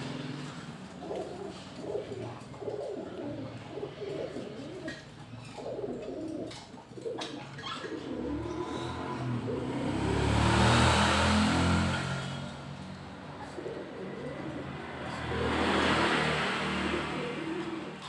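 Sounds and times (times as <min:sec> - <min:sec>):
pigeon cooing: 0:00.0 - 0:11.3, 0:13.2 - 0:18.0.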